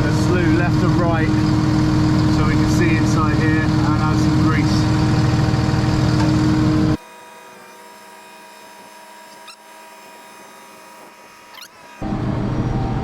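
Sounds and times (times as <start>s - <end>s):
truck engine droning: 0.0s - 7.0s, 12.0s - 13.0s.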